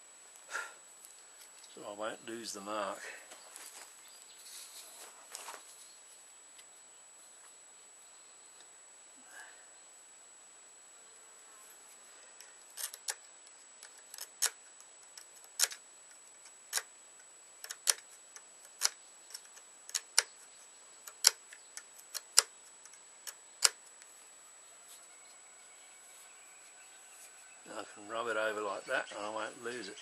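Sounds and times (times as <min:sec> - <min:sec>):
scribe clicking on metal: 0:12.8 - 0:15.8, 0:16.4 - 0:16.9, 0:17.6 - 0:24.0.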